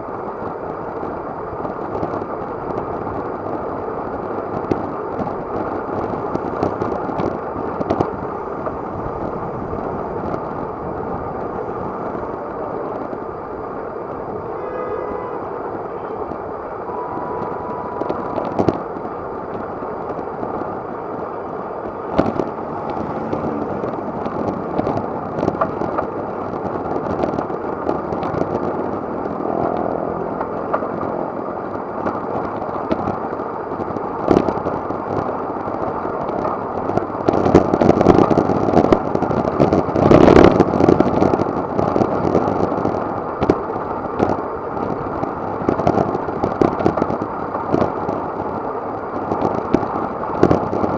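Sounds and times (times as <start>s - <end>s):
wind and road noise rushing: 0.0s - 50.9s.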